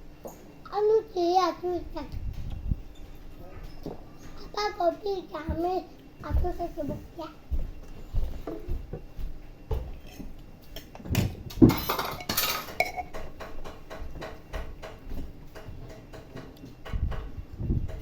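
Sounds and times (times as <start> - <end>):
dishes and cutlery clinking: 9.7 - 17.0.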